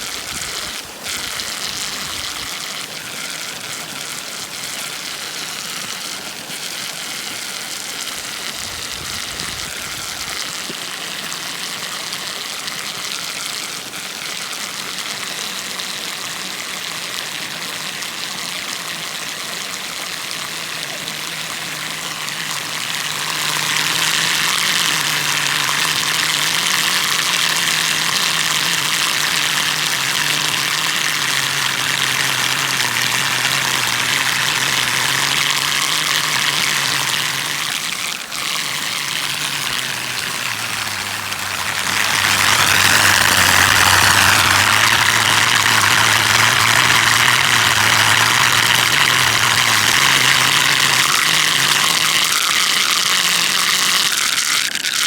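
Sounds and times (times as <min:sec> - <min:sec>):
loud rushing water: 0:00.0 - 0:55.0
whirlpool low whistling hum: 0:21.0 - 0:53.2.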